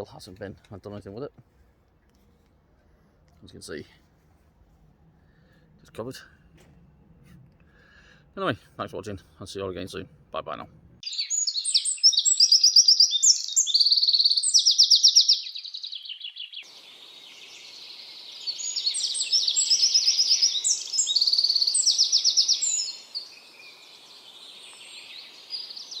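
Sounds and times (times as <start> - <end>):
songbird trilling: 11.0 - 26.0
low background hiss: 16.6 - 26.0.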